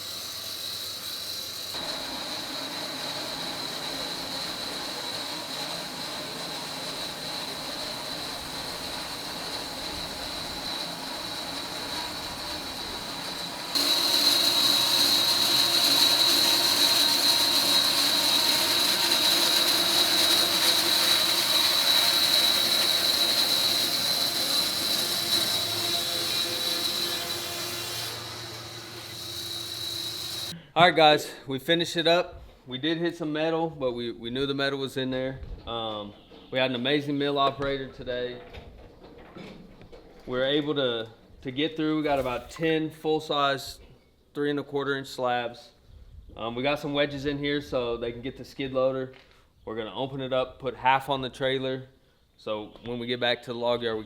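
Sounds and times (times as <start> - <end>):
high blade whine: 0.0 - 30.5
sawmill cutting log: 0.0 - 30.5.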